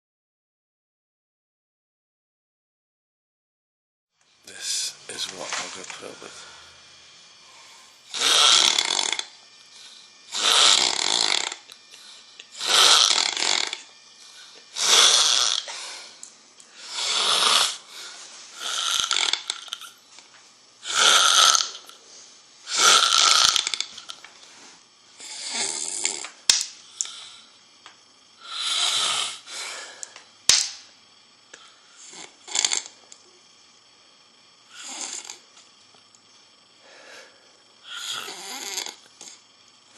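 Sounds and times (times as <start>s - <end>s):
man snoring loudly: 8.0s - 9.4s, 10.3s - 16.2s, 16.8s - 20.0s, 20.8s - 21.9s, 22.7s - 24.2s, 25.2s - 26.3s, 28.4s - 30.0s, 32.0s - 33.0s, 34.7s - 35.5s, 36.8s - 39.4s.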